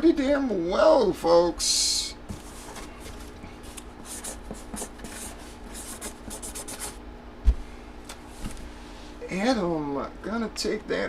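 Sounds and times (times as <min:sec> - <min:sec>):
hands rubbing and scraping box: 0:02.4 - 0:07.0.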